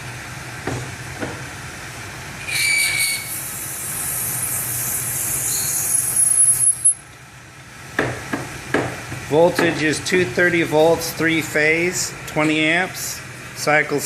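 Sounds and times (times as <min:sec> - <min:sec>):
lathe running with hiss and whine: 0:00.0 - 0:07.1
knock: 0:08.0 - 0:09.0.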